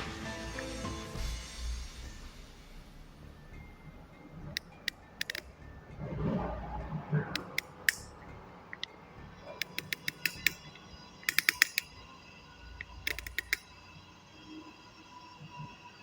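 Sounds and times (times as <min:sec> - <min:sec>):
ratchet wrench clicking: 0:04.6 - 0:05.4, 0:07.4 - 0:08.1, 0:09.6 - 0:12.0, 0:12.8 - 0:13.7.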